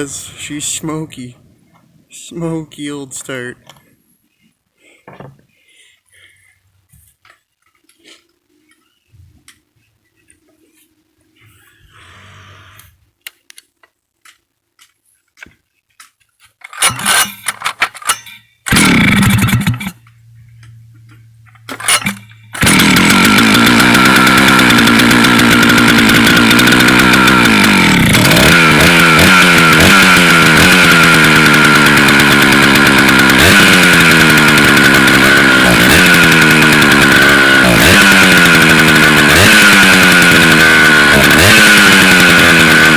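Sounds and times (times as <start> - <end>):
chainsaw engine sputtering: 16.6 - 42.9
pull-start cord rasp: 16.6 - 42.9.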